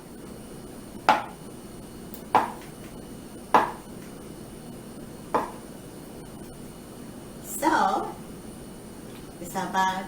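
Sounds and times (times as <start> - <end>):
knife chopping onto cutting board: 1.1 - 1.4, 2.3 - 2.9, 3.5 - 3.9, 5.3 - 5.6.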